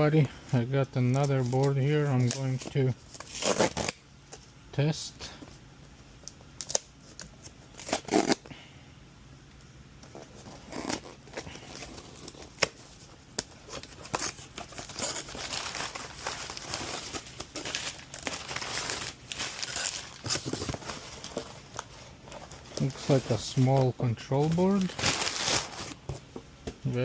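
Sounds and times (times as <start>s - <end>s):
packaging crinkling and tearing: 1.1s - 4.0s, 10.0s - 26.0s.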